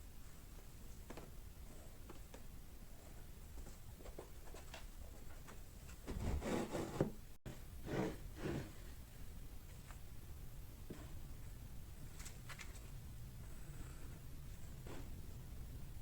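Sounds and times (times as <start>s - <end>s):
rubbing or scraping: 6.0s - 9.0s.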